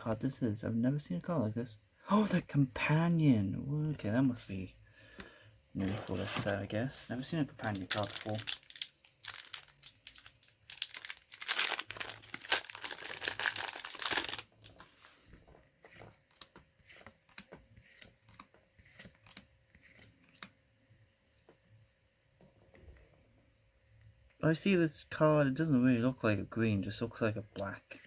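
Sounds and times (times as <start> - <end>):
trading cards rustling: 5.8 - 20.5
foil wrapper tearing and crinkling: 7.6 - 14.8.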